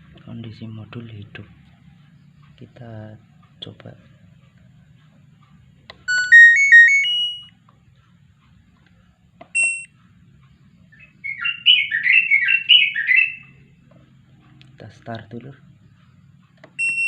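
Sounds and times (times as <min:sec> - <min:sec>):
rising stepped beeps: 0:06.1 - 0:07.5, 0:09.6 - 0:09.9
short beep: 0:06.1 - 0:07.5, 0:09.6 - 0:09.9
warbling chirping tones: 0:06.1 - 0:07.5.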